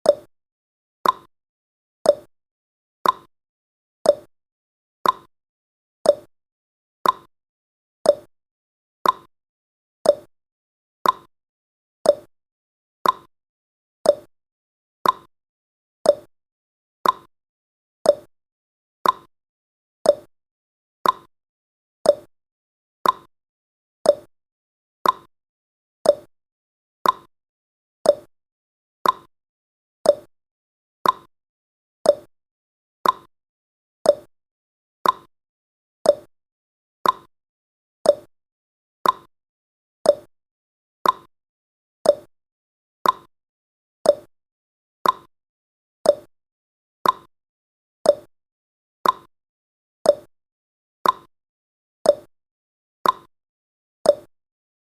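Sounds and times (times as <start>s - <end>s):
countdown timer ticking: 28.1s - 28.3s, 30.1s - 30.3s, 32.1s - 32.3s, 34.1s - 34.3s, 36.1s - 36.3s, 38.1s - 38.3s, 40.1s - 40.3s, 42.1s - 42.3s, 44.1s - 44.3s, 45.0s - 45.3s, 46.1s - 46.3s, 48.1s - 48.3s, 50.1s - 50.3s.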